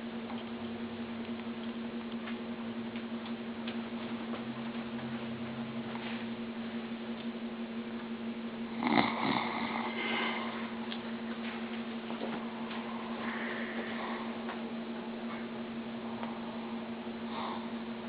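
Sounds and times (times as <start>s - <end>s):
steady hum: 0.0s - 18.0s
man snoring: 8.7s - 10.8s.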